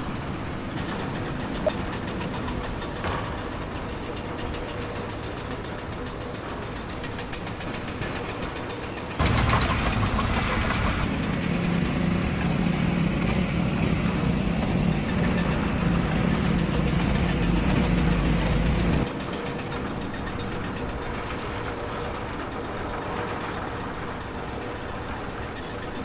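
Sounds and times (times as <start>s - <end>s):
engine humming: 9.2s - 19.1s.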